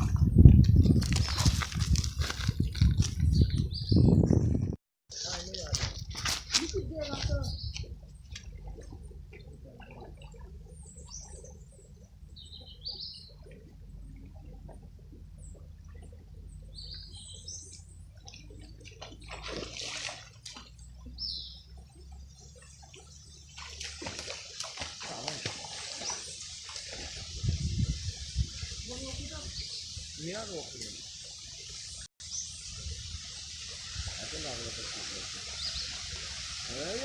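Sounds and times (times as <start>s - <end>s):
water flowing in rocky river: 13.0s - 37.0s.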